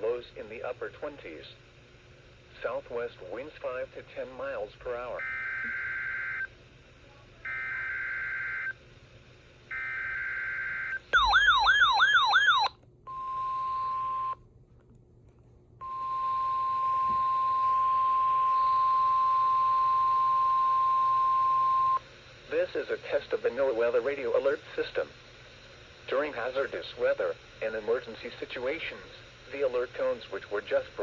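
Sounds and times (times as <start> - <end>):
short steady beep: 13.1 - 14.4.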